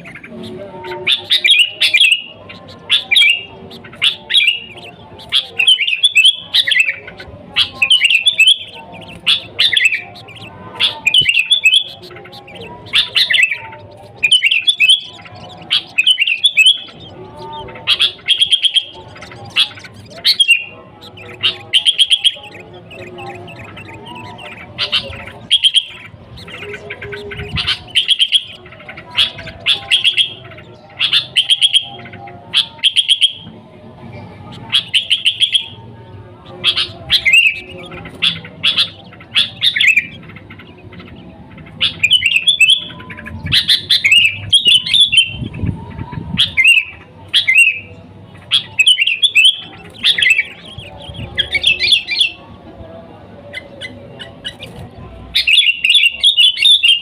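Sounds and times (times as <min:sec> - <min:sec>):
bulbul chirping: 0:00.0 - 0:33.5, 0:34.5 - 0:45.4.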